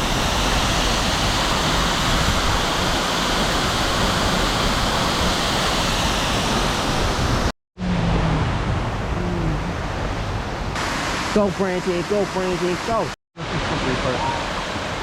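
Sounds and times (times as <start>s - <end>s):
waterfall rushing: 10.8s - 15.0s.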